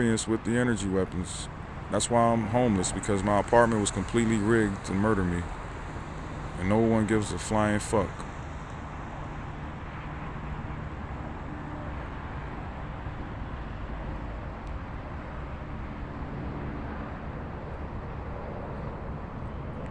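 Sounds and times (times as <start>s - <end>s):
vehicle engine rumbling: 0.0s - 10.4s.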